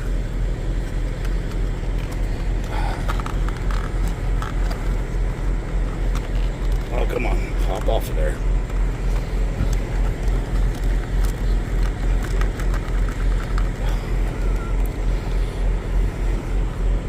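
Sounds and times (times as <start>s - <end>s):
large engine idling: 0.0s - 17.0s.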